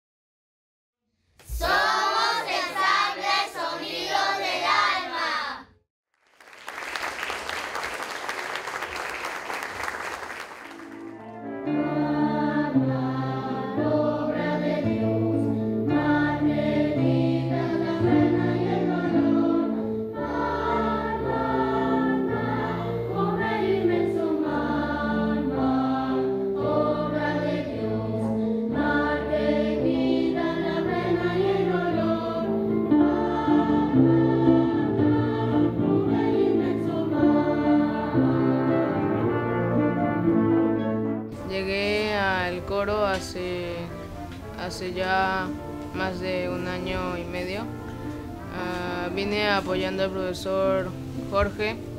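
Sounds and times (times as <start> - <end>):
choir singing chords: 1.4 - 5.7, 11.0 - 41.3.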